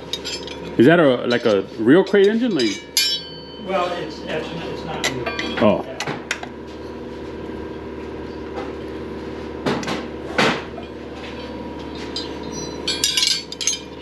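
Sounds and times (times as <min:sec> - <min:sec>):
steady background hum: 0:00.0 - 0:14.0
metal tools knocking and clattering: 0:00.1 - 0:00.8, 0:02.2 - 0:03.4, 0:12.1 - 0:14.0
metal clinks: 0:02.2 - 0:03.9, 0:12.1 - 0:14.0.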